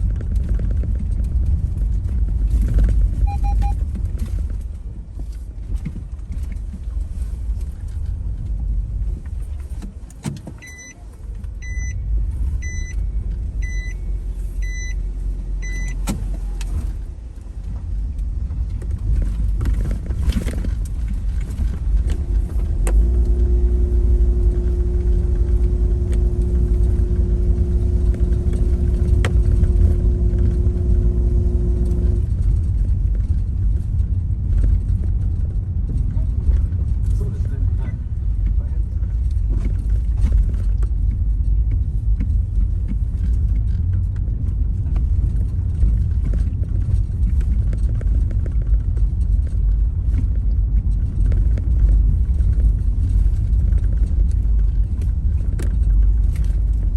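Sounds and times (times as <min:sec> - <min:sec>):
car engine and road noise: 0:00.0 - 0:56.9
short electronic beeps: 0:03.2 - 0:03.8, 0:10.6 - 0:11.0, 0:11.6 - 0:12.0, 0:12.6 - 0:16.0
steady hum: 0:21.6 - 0:33.5.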